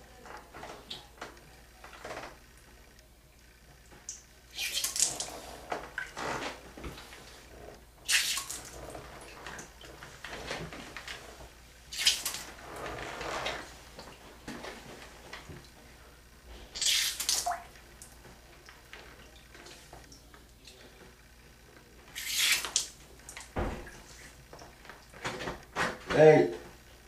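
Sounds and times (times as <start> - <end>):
water squirting: 4.5 - 6.5, 8.0 - 9.9, 11.9 - 13.8, 16.7 - 17.7, 22.1 - 23.4
water splashing and dripping: 8.1 - 10.0, 11.9 - 12.6, 16.8 - 18.2.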